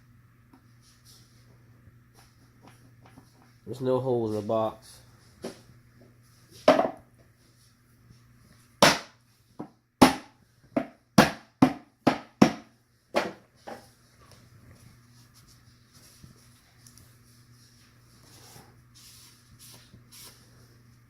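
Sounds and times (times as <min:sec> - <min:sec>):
hammer knocking wood: 0:08.8 - 0:13.4.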